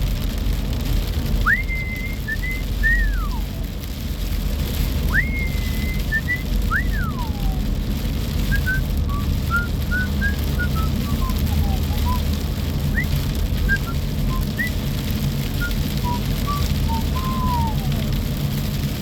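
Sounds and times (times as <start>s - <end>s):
person whistling a tune: 1.4s - 3.5s, 5.1s - 7.6s, 8.5s - 12.2s, 13.7s - 14.7s, 15.6s - 18.1s.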